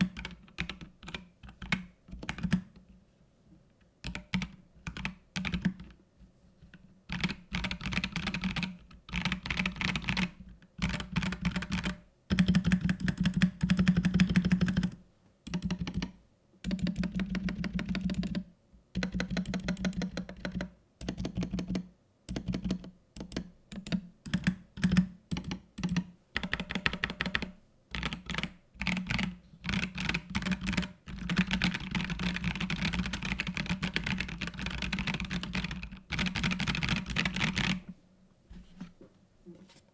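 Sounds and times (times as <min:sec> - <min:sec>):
mechanical keyboard typing: 0:00.0 - 0:02.8, 0:04.0 - 0:05.9, 0:06.7 - 0:37.9.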